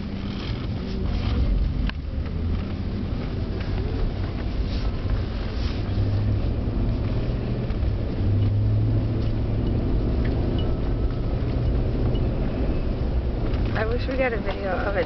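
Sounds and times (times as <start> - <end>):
car engine and road drone: 0.0 - 15.0.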